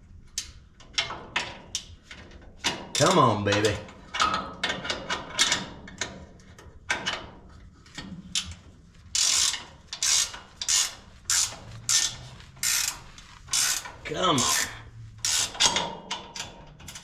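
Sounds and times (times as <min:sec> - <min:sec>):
ratchet wrench ratcheting: 0:09.2 - 0:16.2.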